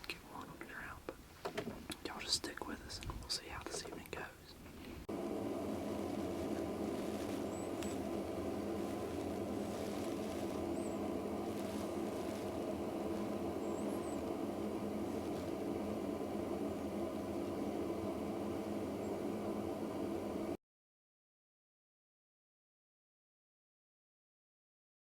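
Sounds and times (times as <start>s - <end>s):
low mechanical hum: 0.0s - 20.6s
faint high chirps: 5.8s - 8.2s, 13.1s - 15.4s.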